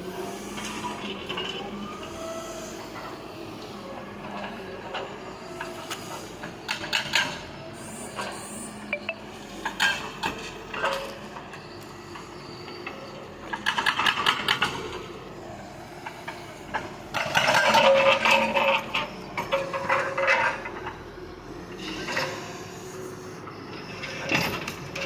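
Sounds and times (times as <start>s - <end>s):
excavator clanking: 12.8s - 15.3s, 15.9s - 22.7s, 23.6s - 25.0s
excavator clattering: 12.8s - 15.3s, 16.0s - 22.6s, 23.6s - 25.0s.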